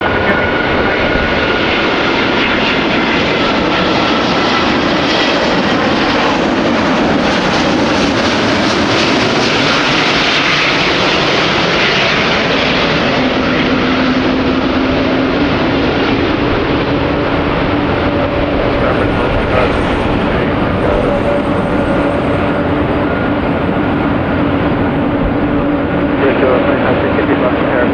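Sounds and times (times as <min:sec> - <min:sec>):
jet engines roaring: 0:00.0 - 0:27.9
faint high jet whine: 0:09.1 - 0:27.9.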